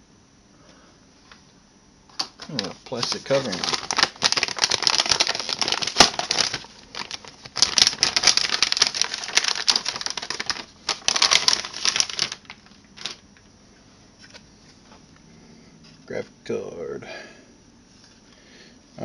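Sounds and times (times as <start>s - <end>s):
plastic covering crinkling: 2.2s - 13.5s.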